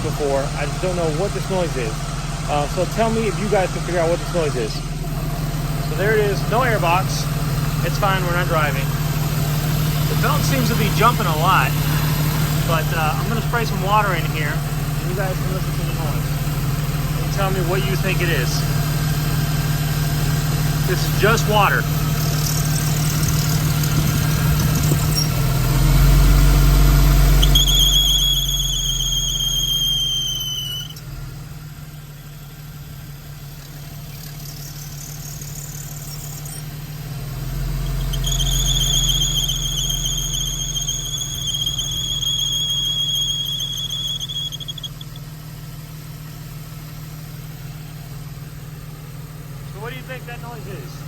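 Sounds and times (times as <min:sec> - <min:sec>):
car engine idling: 0:00.0 - 0:51.0
belt squealing: 0:09.6 - 0:18.8, 0:20.3 - 0:31.2, 0:33.4 - 0:45.8.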